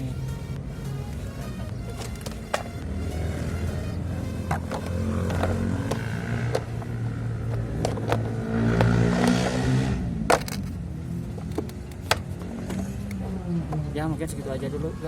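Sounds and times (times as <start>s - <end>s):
plastic cover clicking and clattering: 7.5s - 9.5s, 10.3s - 10.8s.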